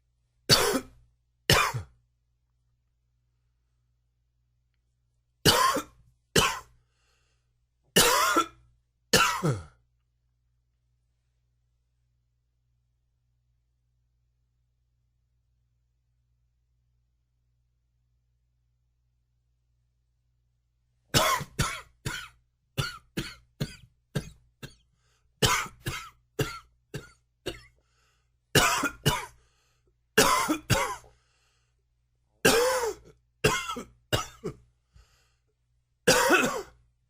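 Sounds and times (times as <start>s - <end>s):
man coughing: 0.5s - 1.9s, 5.5s - 6.7s, 8.0s - 9.8s, 21.2s - 24.8s, 25.4s - 27.8s, 28.6s - 29.4s, 30.2s - 31.1s, 32.4s - 34.6s, 36.1s - 36.8s.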